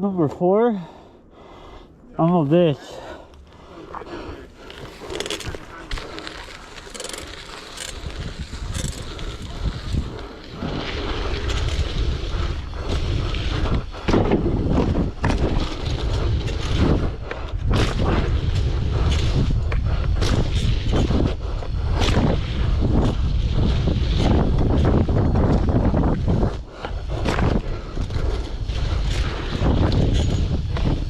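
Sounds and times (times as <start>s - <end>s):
wind buffeting microphone: 3.6s - 31.0s
bicycle knocks and rattles: 4.8s - 10.0s, 13.7s - 21.3s, 21.9s - 31.0s.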